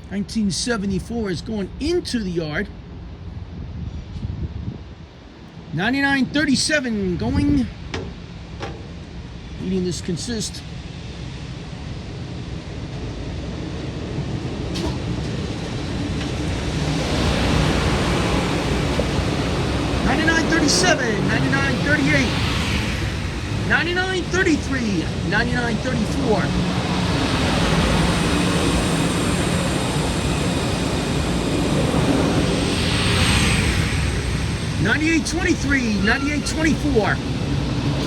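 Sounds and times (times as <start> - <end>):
electric train rumbling past: 0.0 - 38.0
low hum: 0.0 - 38.0.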